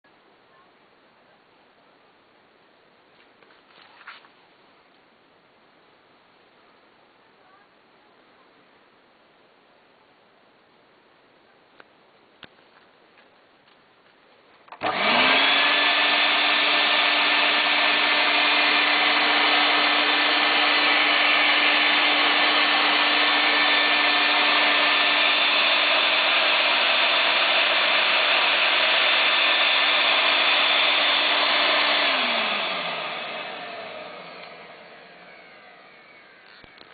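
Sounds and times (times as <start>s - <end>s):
vacuum cleaner motor whine: 14.7s - 36.9s
vacuum cleaner switch: 14.7s - 36.9s.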